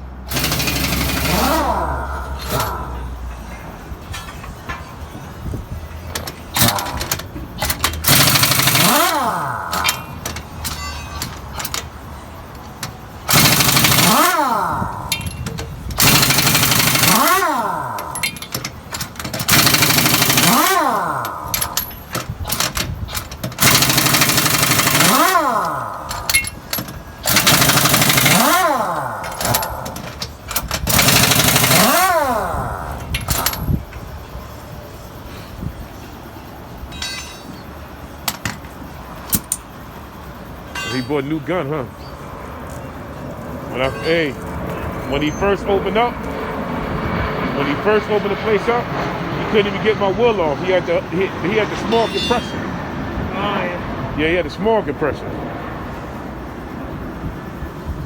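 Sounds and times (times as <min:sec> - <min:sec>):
air impact wrench whining: 0:00.0 - 0:34.1, 0:49.6 - 0:52.8.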